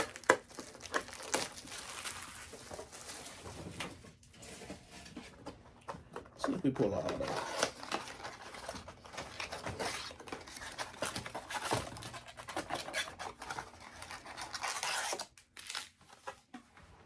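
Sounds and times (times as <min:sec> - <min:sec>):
card wrappers crinkling: 0:00.0 - 0:03.4, 0:06.4 - 0:16.5.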